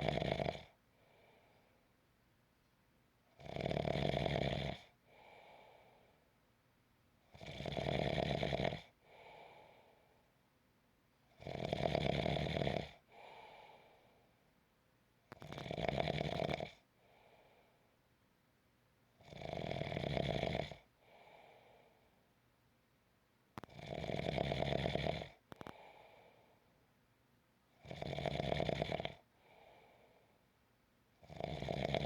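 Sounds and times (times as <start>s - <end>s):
person snoring: 0.0s - 0.7s, 3.4s - 4.9s, 7.4s - 8.9s, 11.4s - 13.0s, 15.4s - 16.8s, 23.6s - 25.8s, 27.8s - 29.2s, 31.3s - 32.0s
soft short breath: 0.9s - 1.9s, 5.1s - 6.3s, 13.1s - 14.4s.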